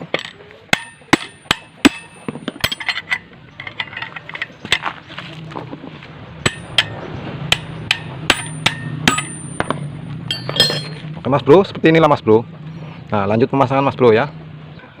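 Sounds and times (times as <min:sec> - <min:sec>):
metal tools clinking on metal: 0:00.0 - 0:05.0, 0:06.4 - 0:11.1
metal scraping: 0:00.0 - 0:11.2
low steady hum: 0:00.0 - 0:11.4.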